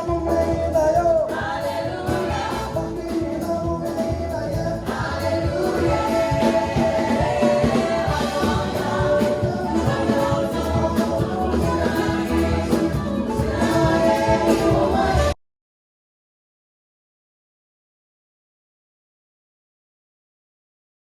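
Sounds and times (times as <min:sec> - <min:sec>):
band with bass and drums: 0:00.0 - 0:15.4
choir singing gospel: 0:00.0 - 0:15.4.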